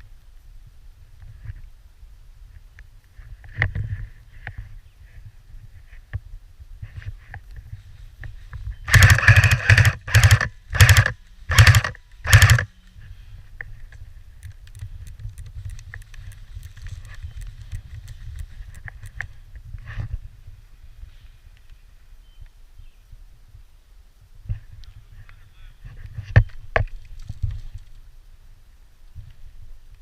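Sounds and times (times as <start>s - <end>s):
airsoft gun firing bursts: 8.9s - 12.7s.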